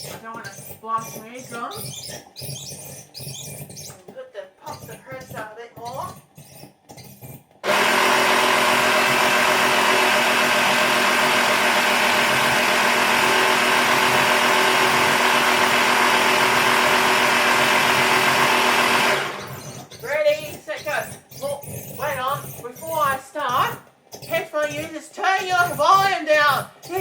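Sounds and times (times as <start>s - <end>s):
electric air compressor running: 7.6s - 20.1s.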